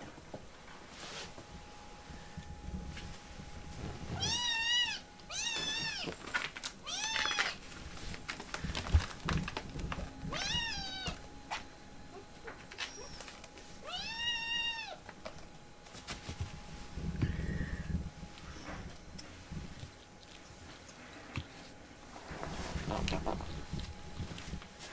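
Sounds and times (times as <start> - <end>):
kitten meowing: 4.2 - 6.1, 10.3 - 11.2, 13.9 - 15.0.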